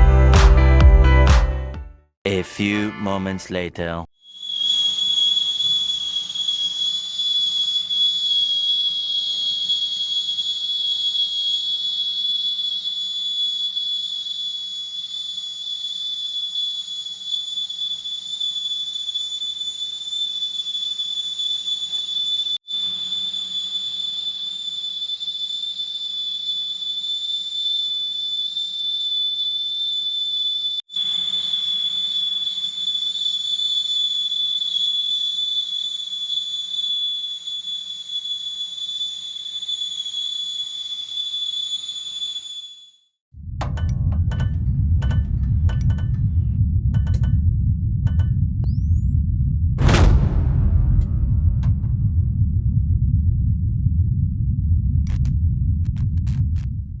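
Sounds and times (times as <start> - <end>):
pressure cooker whistling: 4.2 - 46.2, 48.1 - 49.2.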